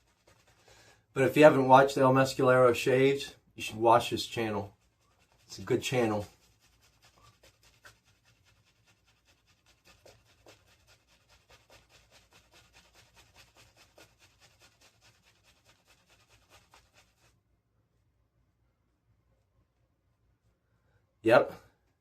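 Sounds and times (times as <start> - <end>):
shaving brush swishing lather: 0.0 - 3.0, 3.6 - 17.4.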